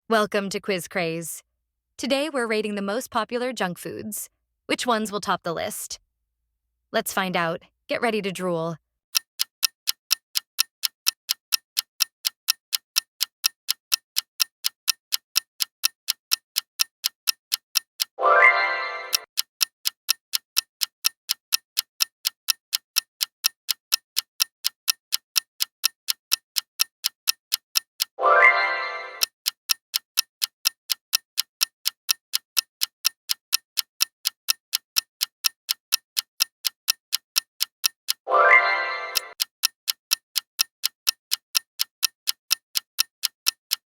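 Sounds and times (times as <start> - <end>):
clock ticking: 9.1 - 43.9.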